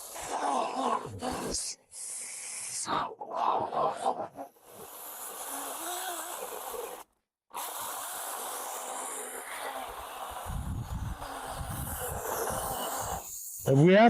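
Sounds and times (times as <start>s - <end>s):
electric chainsaw cutting log: 4.6s - 13.8s.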